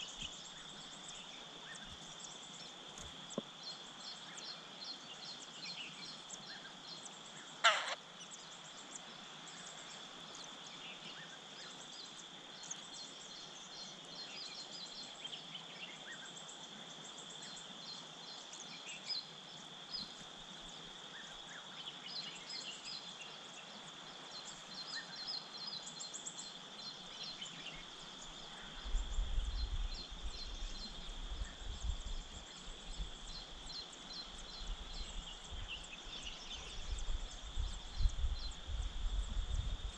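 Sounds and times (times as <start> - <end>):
bird call sweeping downward: 7.6 - 8.0
birds chirping: 7.6 - 8.0.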